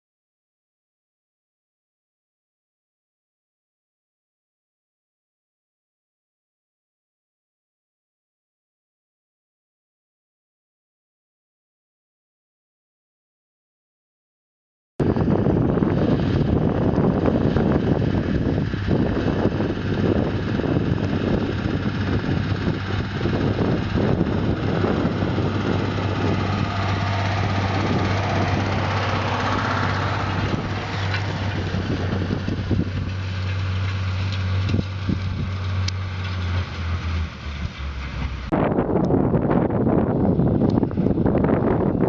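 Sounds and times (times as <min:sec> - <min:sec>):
broad rushing noise: 0:15.0 - 0:42.0
diesel engine droning: 0:15.0 - 0:42.0
wind noise on microphone: 0:15.0 - 0:42.0.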